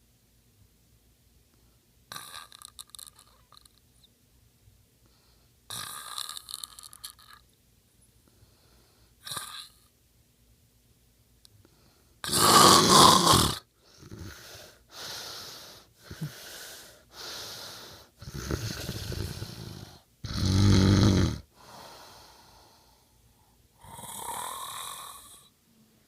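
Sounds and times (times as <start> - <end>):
man snoring: 12.2 - 16.6, 17.2 - 22.0, 23.8 - 25.5.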